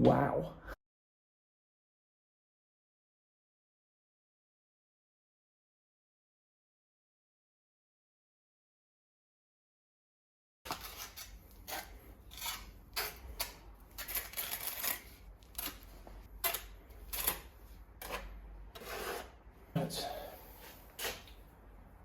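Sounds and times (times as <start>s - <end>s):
tiling tool scrapes and clicks: 10.7s - 19.4s, 20.6s - 21.4s.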